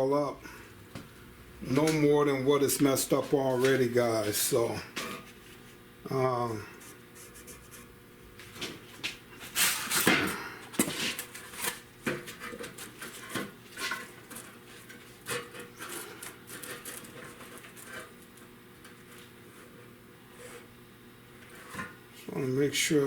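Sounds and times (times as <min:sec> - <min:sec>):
clicks and scraping on sheet metal: 0:09.5 - 0:19.8.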